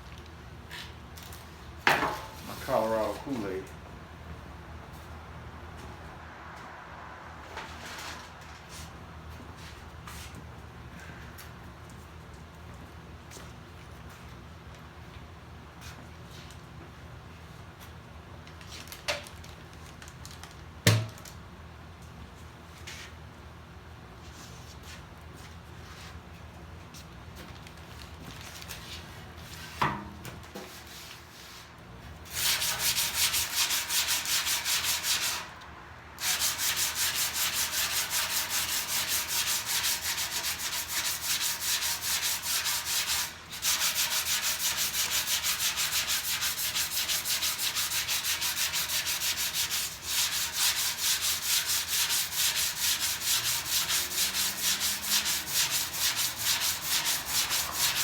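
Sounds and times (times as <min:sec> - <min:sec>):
sandpaper rubbing body filler: 0:32.3 - 0:35.4, 0:36.2 - 0:58.0.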